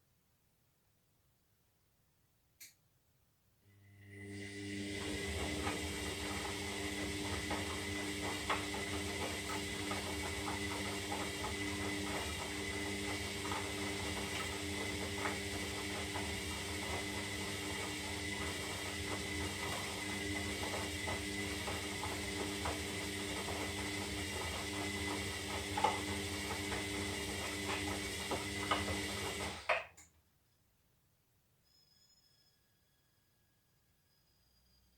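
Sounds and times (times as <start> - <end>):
washing machine humming: 3.9 - 30.0.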